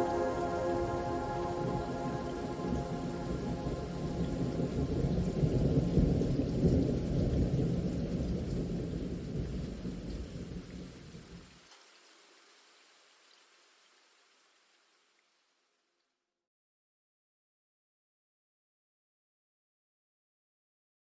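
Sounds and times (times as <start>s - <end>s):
thunder rumbling: 0.0s - 11.2s
steady rain: 0.0s - 15.6s.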